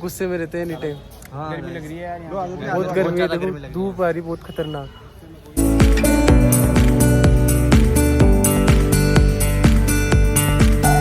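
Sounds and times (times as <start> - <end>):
electronic beat music: 5.6 - 11.0.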